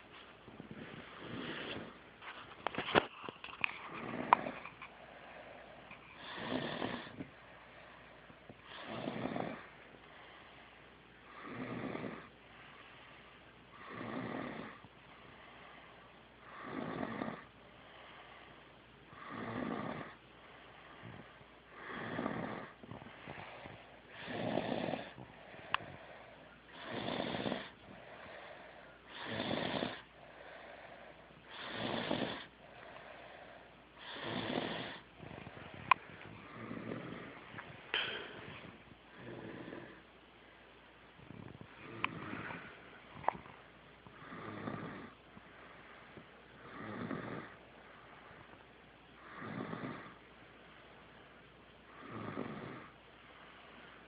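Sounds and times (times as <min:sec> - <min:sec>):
quiet breathing: 0:00.0 - 0:54.0
person snoring: 0:03.9 - 0:04.7, 0:06.2 - 0:07.2, 0:08.7 - 0:09.8, 0:11.3 - 0:12.3, 0:13.8 - 0:14.8, 0:16.5 - 0:17.5, 0:19.2 - 0:20.2, 0:21.0 - 0:33.0, 0:34.0 - 0:40.0, 0:41.3 - 0:42.8, 0:44.2 - 0:45.2, 0:46.6 - 0:47.6, 0:49.2 - 0:50.2, 0:52.0 - 0:52.9.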